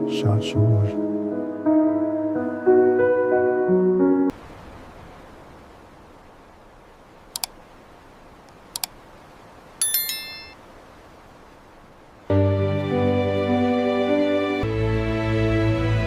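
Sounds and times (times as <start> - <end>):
quick double clicks: 7.4 - 7.6
bright bell-like ding: 9.8 - 10.6.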